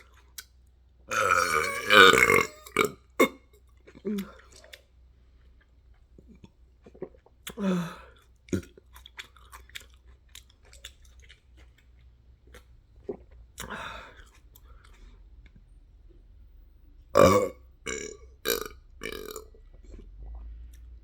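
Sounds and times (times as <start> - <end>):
close-up chewing: 8.2 - 15.7.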